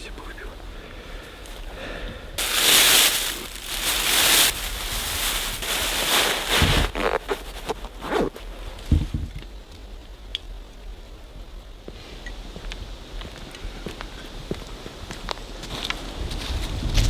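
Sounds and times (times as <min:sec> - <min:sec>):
gear rustling and scraping: 0:02.4 - 0:08.4.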